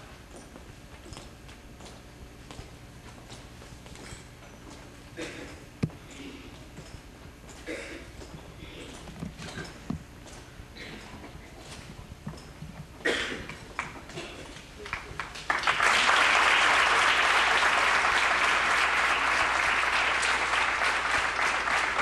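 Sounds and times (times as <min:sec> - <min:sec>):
audience applause: 0:14.8 - 0:22.0.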